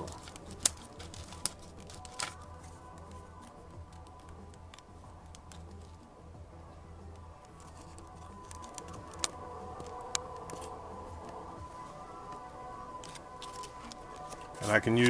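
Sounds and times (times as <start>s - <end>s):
faint background music: 0.0s - 15.0s
sharp clicks: 7.1s - 11.6s.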